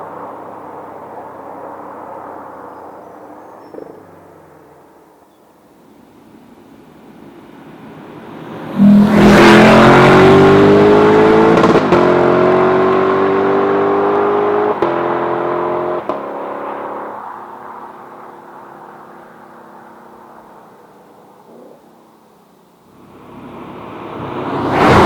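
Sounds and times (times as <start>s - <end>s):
sports car accelerating: 8.2s - 17.4s, 23.2s - 25.0s.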